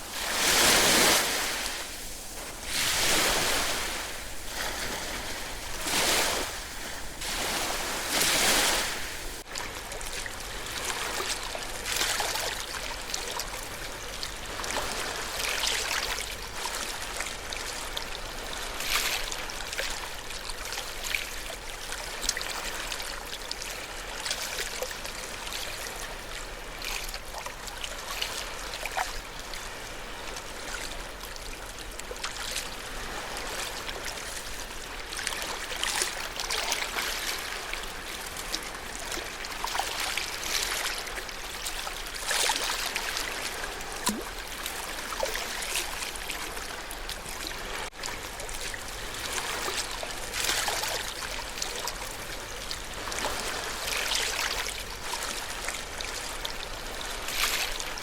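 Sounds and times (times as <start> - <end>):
ocean waves breaking: 0.0 - 9.5, 29.6 - 58.0
water lapping and trickling: 0.0 - 58.0.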